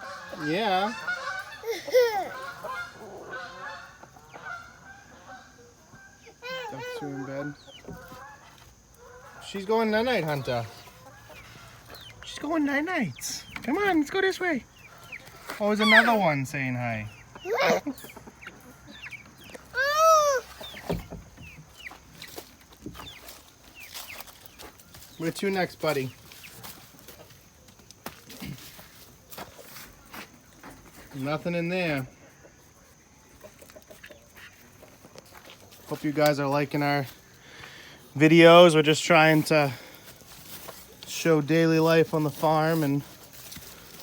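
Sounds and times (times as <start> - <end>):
chicken drawn-out call: 0.0 - 12.4, 14.7 - 16.6, 17.3 - 21.1
farm fowl honking: 0.0 - 22.4.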